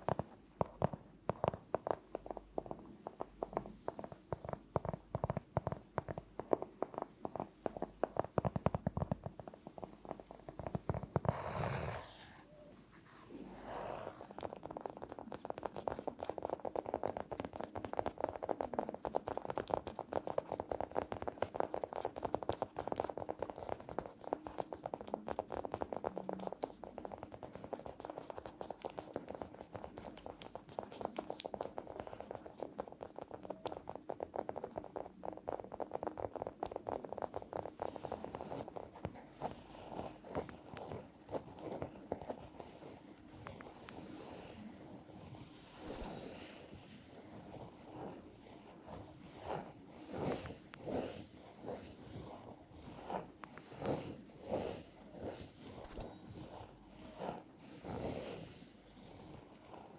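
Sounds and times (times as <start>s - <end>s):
fast tapping on hard object: 0.0s - 11.4s, 14.4s - 44.2s.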